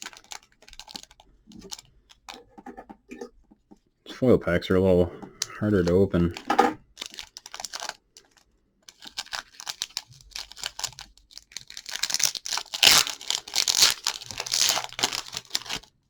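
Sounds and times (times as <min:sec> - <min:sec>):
foil wrapper tearing and crinkling: 0:00.0 - 0:02.3, 0:06.9 - 0:15.9.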